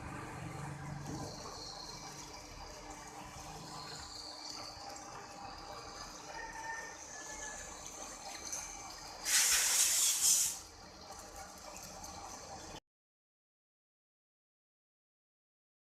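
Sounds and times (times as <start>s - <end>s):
lathe cutting metal hiss: 9.2s - 10.6s
loud hiss: 9.2s - 10.6s.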